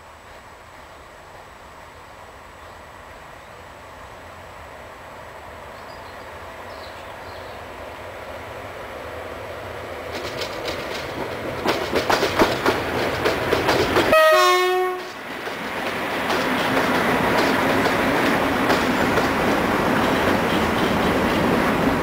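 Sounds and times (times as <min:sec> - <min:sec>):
train rumbling past: 0:00.0 - 0:22.0
train wheels clicking on rails: 0:09.8 - 0:22.0
train horn blast: 0:14.1 - 0:15.2.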